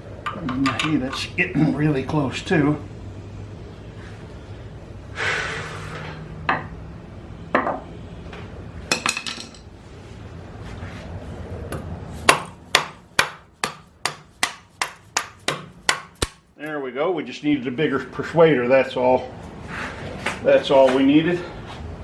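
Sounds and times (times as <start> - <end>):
hammer striking metal: 12.3 - 16.4.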